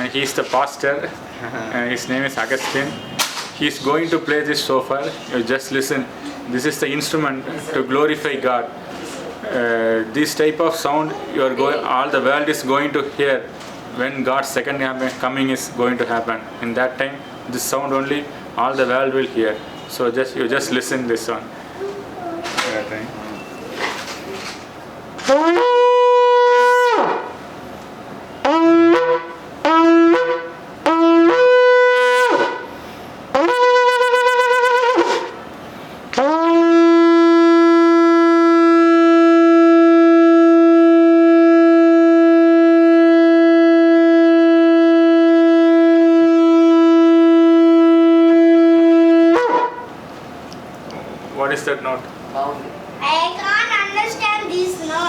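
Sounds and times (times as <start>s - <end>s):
shofar blasts: 25.2s - 27.3s, 28.4s - 32.7s, 33.3s - 35.4s, 36.2s - 49.9s.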